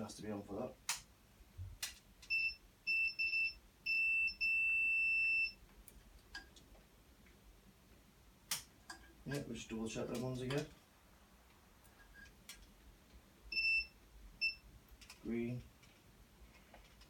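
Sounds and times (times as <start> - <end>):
high-pitched tester beeps: 2.3 - 5.6, 13.5 - 14.6
sharp clicks: 8.5 - 8.7.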